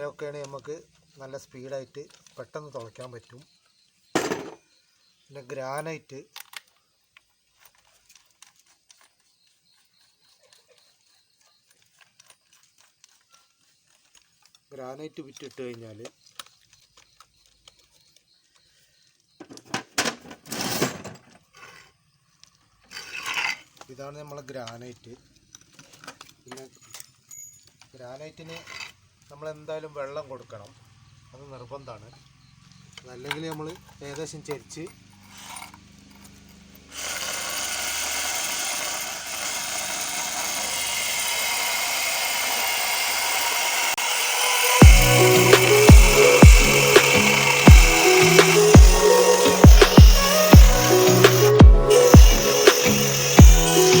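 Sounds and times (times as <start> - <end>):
hard objects scraping on surface: 22.9 - 23.8
hammer drill boring into stone: 36.8 - 54.0.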